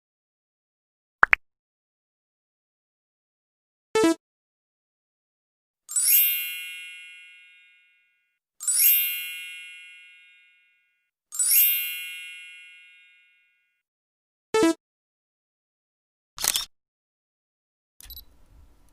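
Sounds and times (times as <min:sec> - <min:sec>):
high chime ding: 0:05.9 - 0:13.6.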